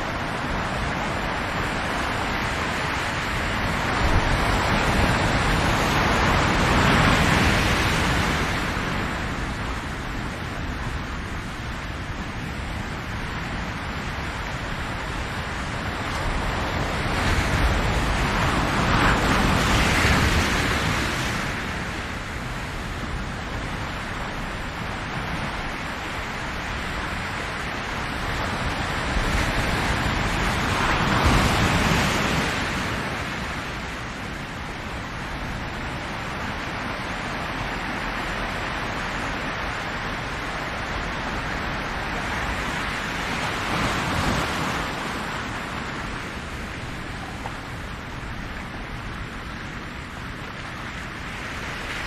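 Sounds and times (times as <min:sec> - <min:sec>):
ocean waves: 0:00.0 - 0:52.0.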